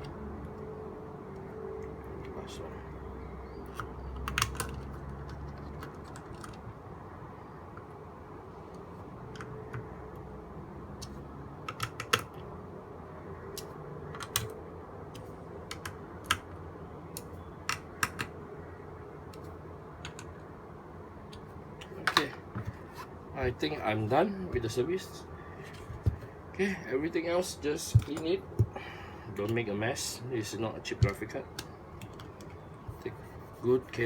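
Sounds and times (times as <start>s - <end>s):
screwdriver and parts clicking: 3.7s - 6.7s, 13.5s - 18.4s, 27.9s - 28.7s, 31.0s - 32.7s.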